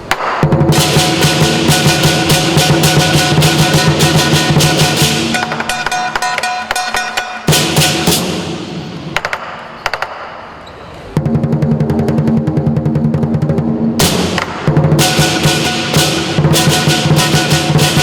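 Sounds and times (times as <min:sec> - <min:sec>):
drum roll: 0:00.0 - 0:09.6, 0:11.1 - 0:18.0
cymbals and gong crashing: 0:00.4 - 0:09.2, 0:13.6 - 0:18.0.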